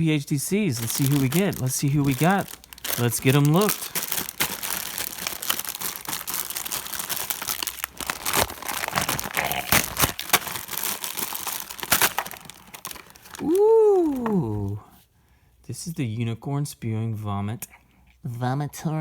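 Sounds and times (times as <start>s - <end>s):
plastic packaging crinkling and tearing: 0.7s - 14.8s.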